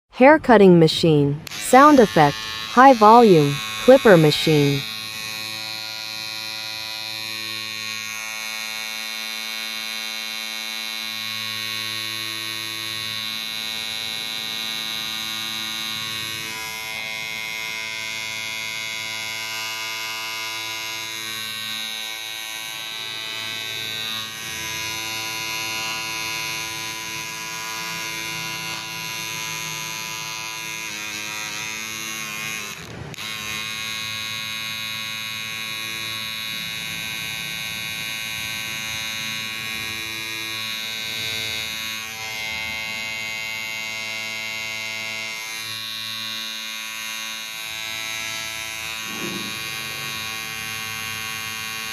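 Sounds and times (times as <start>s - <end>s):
electric hair clipper buzzing: 1.4s - 1.6s, 2.3s - 2.8s, 3.6s - 3.8s, 4.8s - 51.9s.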